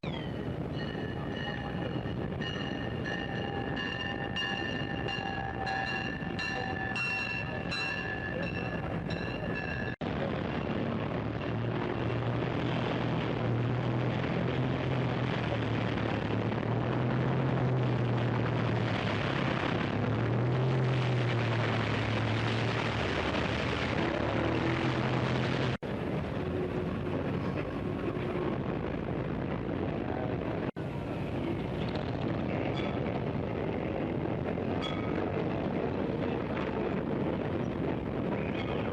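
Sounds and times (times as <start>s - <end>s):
traffic noise: 0.0s - 38.9s
low engine drone: 5.1s - 34.7s.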